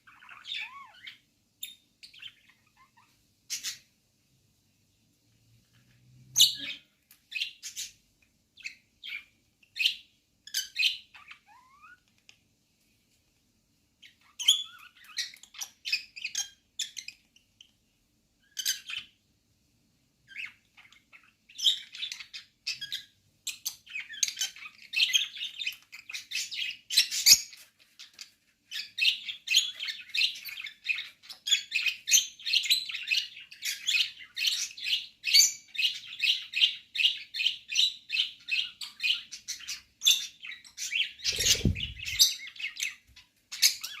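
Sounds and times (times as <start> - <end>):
parrots chirping: 0.0 - 3.9, 5.7 - 8.0, 8.6 - 12.3, 14.0 - 17.8, 18.4 - 19.2, 20.3 - 44.0.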